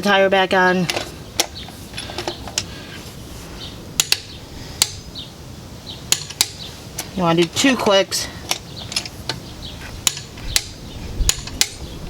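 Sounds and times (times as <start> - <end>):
low steady background noise: 0.0 - 12.0
metal tool clicks and taps: 4.0 - 5.0, 6.1 - 6.6, 10.0 - 11.8.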